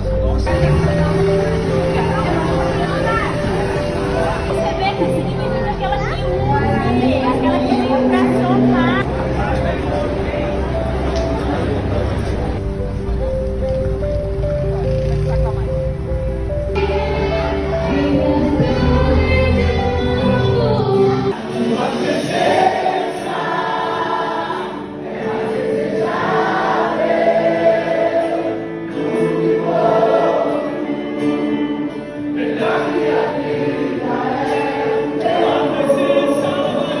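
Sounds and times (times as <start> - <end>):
low bass: 0.0 - 21.3
choir singing gospel song: 16.8 - 37.0.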